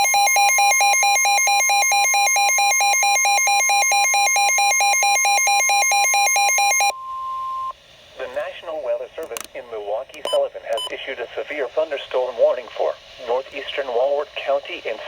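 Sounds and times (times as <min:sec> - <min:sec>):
pulsing alarm beeps: 0:00.0 - 0:07.7
steady alarm tone: 0:00.0 - 0:07.7.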